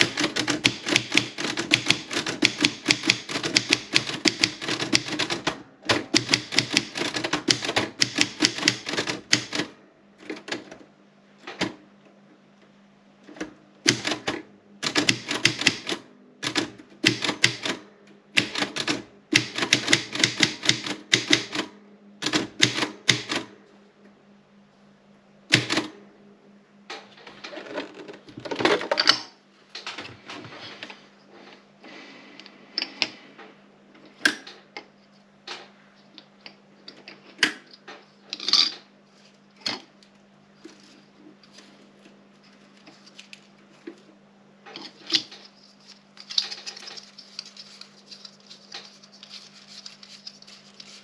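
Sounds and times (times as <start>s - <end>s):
typewriter key strikes: 0.0s - 9.7s, 13.9s - 17.8s, 18.4s - 23.5s
faint steady hum: 0.0s - 51.0s.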